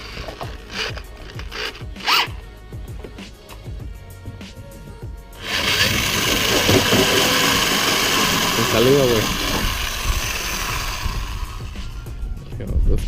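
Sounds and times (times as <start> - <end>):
background music: 0.0 - 13.0
loud steady noise: 5.4 - 12.2.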